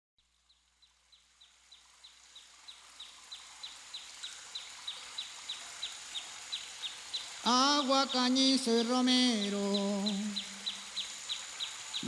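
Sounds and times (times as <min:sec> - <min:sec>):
background hiss: 0:00.2 - 0:12.0
bird calling: 0:06.8 - 0:12.0.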